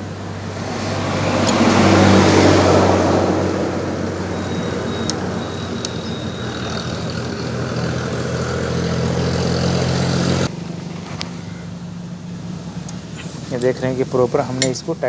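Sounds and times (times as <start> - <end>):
vehicle engine humming: 0.0 - 15.0
faint clicks: 4.4 - 8.6, 10.8 - 11.8, 12.6 - 15.0.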